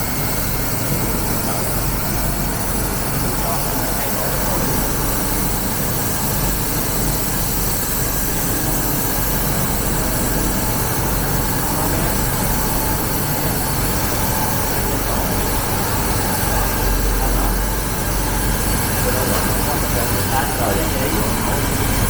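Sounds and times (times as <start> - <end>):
laser cutter rushing noise: 0.0 - 22.0.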